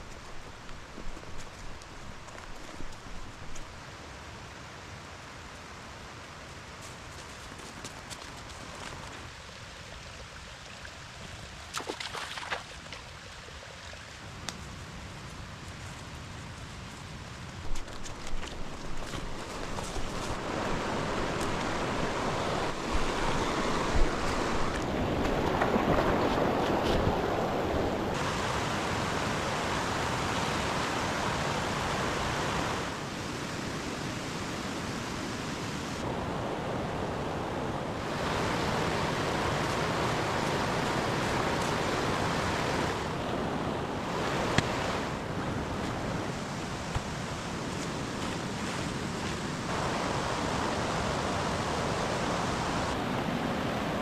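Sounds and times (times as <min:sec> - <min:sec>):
stream rushing over stones: 0:17.6 - 0:54.0.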